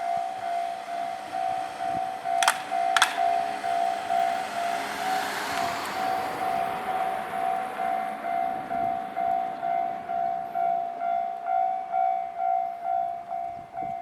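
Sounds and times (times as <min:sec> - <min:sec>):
level-crossing warning bell ringing: 0:00.0 - 0:05.0, 0:06.0 - 0:14.0
sharp clacks: 0:02.4 - 0:03.6.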